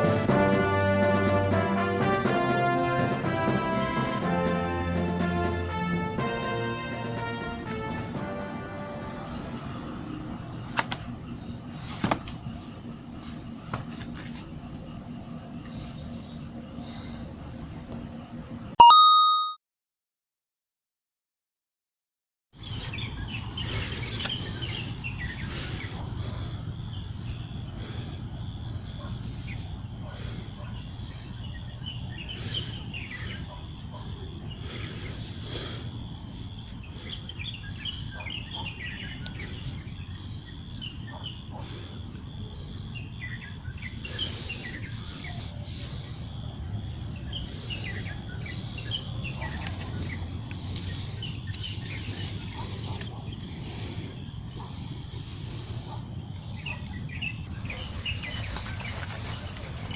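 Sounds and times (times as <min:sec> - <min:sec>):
steady low hum: 0:09.3 - 0:18.8
high-pitched tone: 0:18.8 - 0:19.6
birds chirping: 0:22.6 - 0:59.9.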